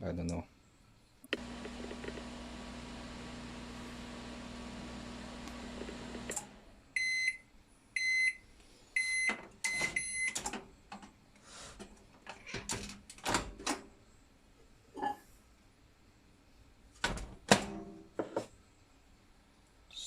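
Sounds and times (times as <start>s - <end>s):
microwave oven humming: 1.3s - 7.1s
microwave beeps: 7.0s - 7.4s, 8.0s - 8.4s, 9.0s - 10.4s.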